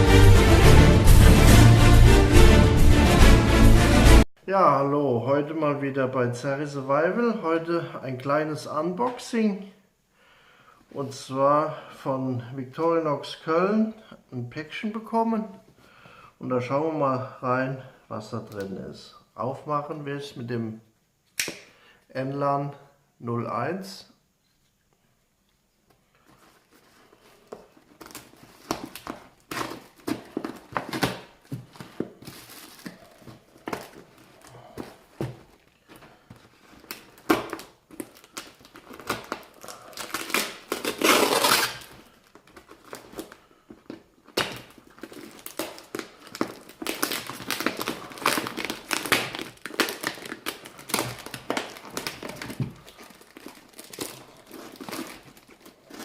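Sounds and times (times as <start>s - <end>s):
cardboard and packing material rustling: 26.2s - 56.0s
knife slitting packing tape: 38.9s - 42.0s.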